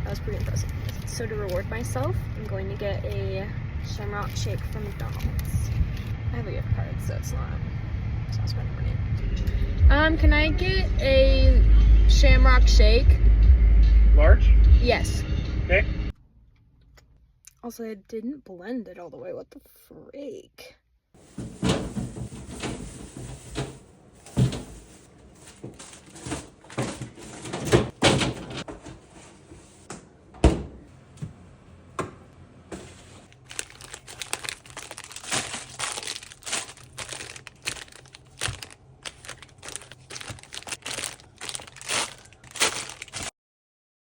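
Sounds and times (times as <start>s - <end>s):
knocks and thuds: 21.2s - 24.8s, 29.9s - 31.4s
bags crinkling: 21.2s - 28.7s, 32.8s - 43.3s.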